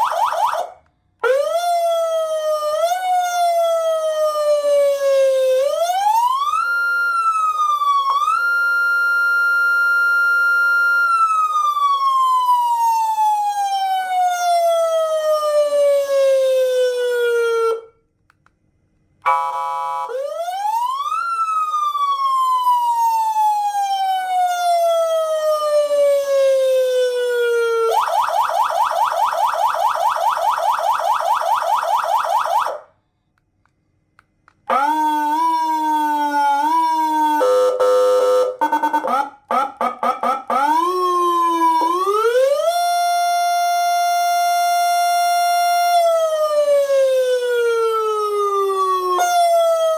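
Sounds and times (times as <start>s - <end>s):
electronic siren wailing: 19.3s - 32.8s, 34.7s - 49.9s.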